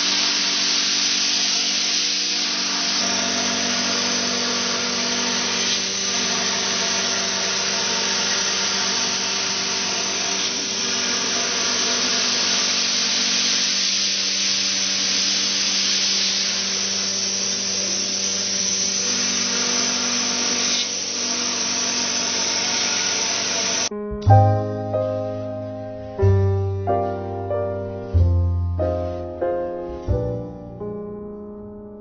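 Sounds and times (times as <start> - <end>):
hiss of cutting: 0.0 - 23.9
machine motor hum with held tones: 0.0 - 23.9.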